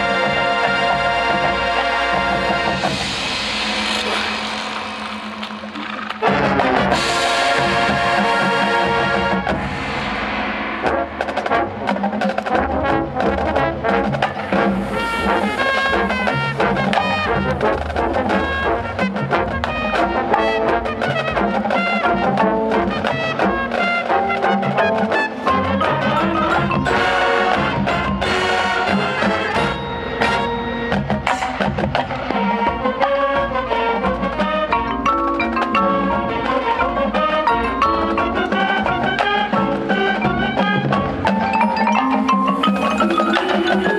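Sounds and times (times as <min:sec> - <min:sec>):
drum strikes: 0:00.0 - 0:43.9
marching band brass: 0:00.0 - 0:43.9
marimba: 0:19.6 - 0:32.3, 0:34.2 - 0:43.9.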